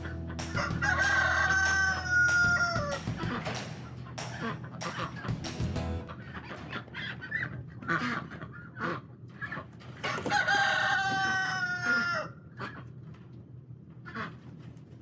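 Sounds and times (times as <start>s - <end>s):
hens clucking: 0.0s - 13.0s
rooster crowing: 0.4s - 3.3s, 10.2s - 12.4s.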